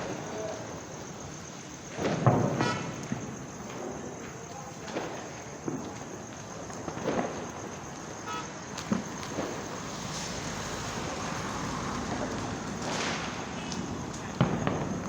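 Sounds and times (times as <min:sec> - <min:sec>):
firecracker bangs: 0:01.8 - 0:06.2, 0:06.8 - 0:15.0
car horn toot: 0:02.6 - 0:02.9
traffic hum: 0:07.0 - 0:15.0.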